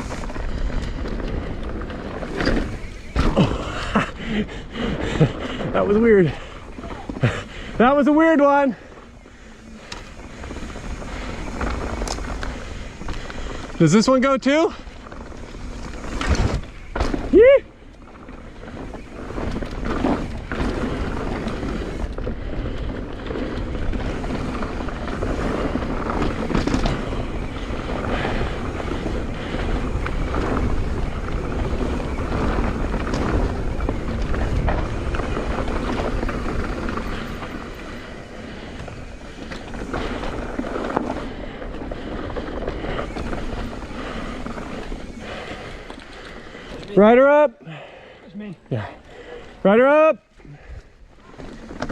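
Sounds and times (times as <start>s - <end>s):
bike knocks and rattles: 0.0s - 4.0s, 14.8s - 17.4s, 18.0s - 46.2s
tyres rolling over dirt: 0.0s - 51.9s.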